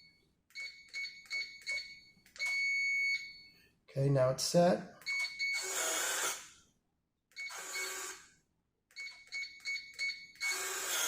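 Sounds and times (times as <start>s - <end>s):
keypad beeps: 0.6s - 3.4s, 5.0s - 5.7s, 9.0s - 10.6s.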